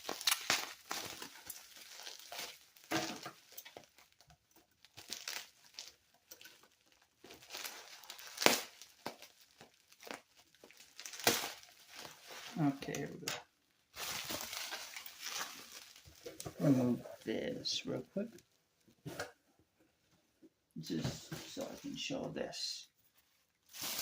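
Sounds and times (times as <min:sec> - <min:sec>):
packaging snapping: 0:00.0 - 0:04.1, 0:07.3 - 0:12.2, 0:23.7 - 0:24.0
packaging crinkling and rustling: 0:00.0 - 0:17.3, 0:23.1 - 0:24.0.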